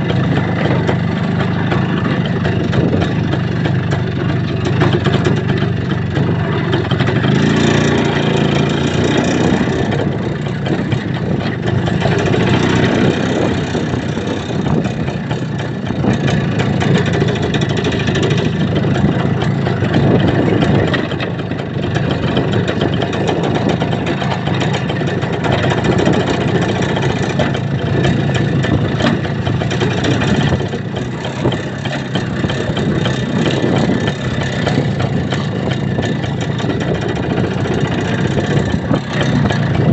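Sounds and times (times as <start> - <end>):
rumbling ride noise: 0.0 - 39.9
vehicle engine running: 0.0 - 39.9.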